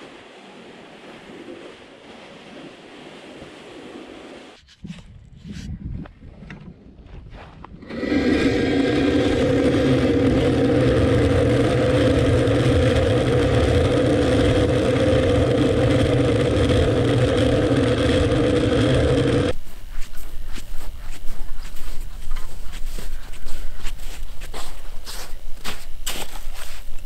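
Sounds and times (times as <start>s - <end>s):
ice auger motor drilling: 7.8s - 19.6s.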